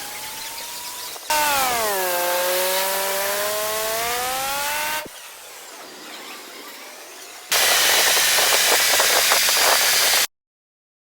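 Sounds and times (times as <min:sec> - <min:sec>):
car wash machine whirring: 0:01.3 - 0:05.4, 0:07.5 - 0:10.3
loud rushing hiss: 0:07.5 - 0:10.3.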